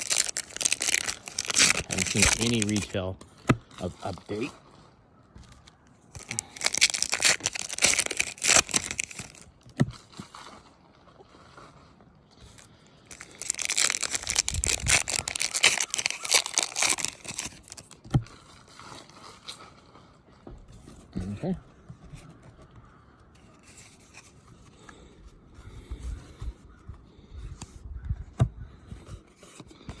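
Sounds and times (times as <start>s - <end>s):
card pack wrappers tearing: 0.0s - 3.0s, 5.6s - 9.5s, 12.5s - 19.6s.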